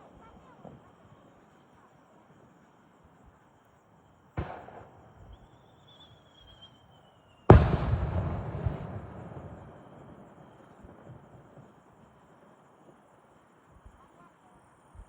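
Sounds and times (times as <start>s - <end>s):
fireworks shells bursting: 4.4s - 11.6s
thin high whistle: 5.2s - 7.7s
boom with rumbling echo: 7.5s - 11.0s.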